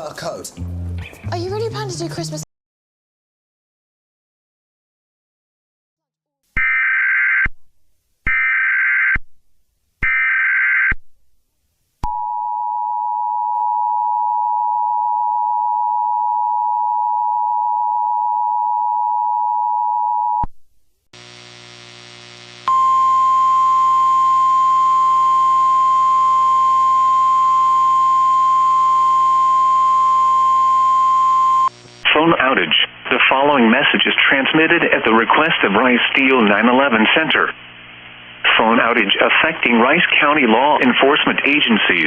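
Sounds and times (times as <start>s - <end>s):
harsh multi-tone buzz: 21.2s - 32.1s.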